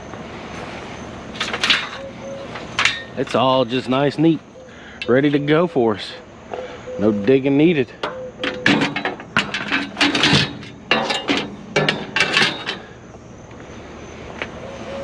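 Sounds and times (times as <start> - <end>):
metal bed frames clanking: 1.3 - 4.1, 8.0 - 13.0.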